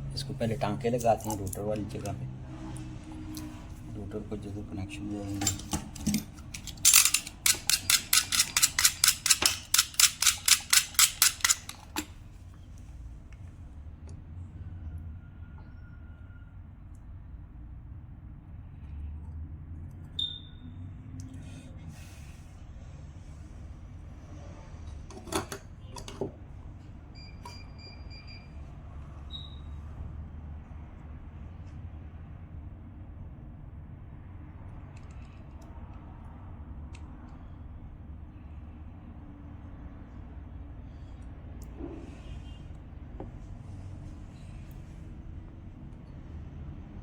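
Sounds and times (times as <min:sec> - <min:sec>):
clicks and knocks of small tools: 0:05.3 - 0:12.2, 0:34.9 - 0:36.0.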